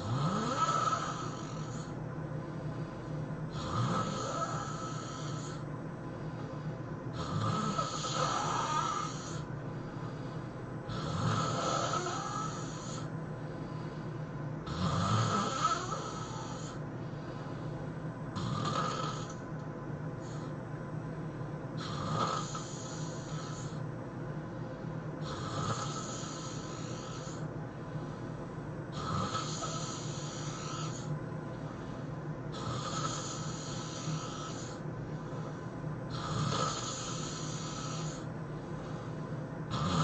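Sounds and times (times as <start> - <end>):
person snoring: 0.0 - 2.0, 3.5 - 5.7, 7.1 - 10.3, 10.9 - 13.1, 14.6 - 16.8, 18.4 - 19.4, 21.8 - 23.8, 25.2 - 27.5, 28.9 - 31.1, 32.5 - 35.5, 36.1 - 38.3, 39.7 - 40.0.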